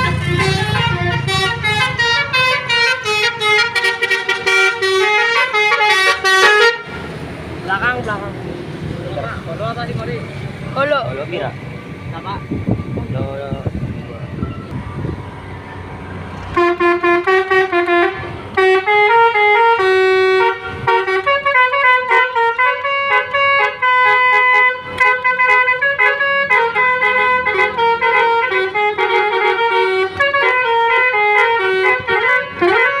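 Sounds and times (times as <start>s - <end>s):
multi-tone musical horn tune: 0.0s - 7.0s, 16.5s - 33.0s.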